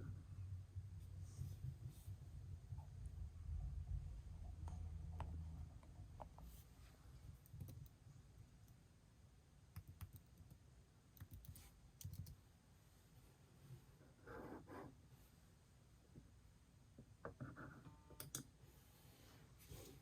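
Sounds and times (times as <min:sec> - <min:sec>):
computer mouse clicks: 0:07.4 - 0:08.0, 0:11.2 - 0:12.4.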